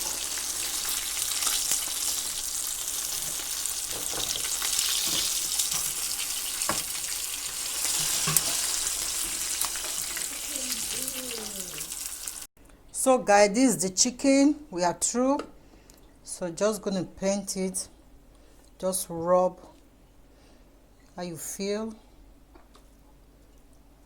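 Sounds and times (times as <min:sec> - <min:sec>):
oil sizzling: 0:00.0 - 0:12.5.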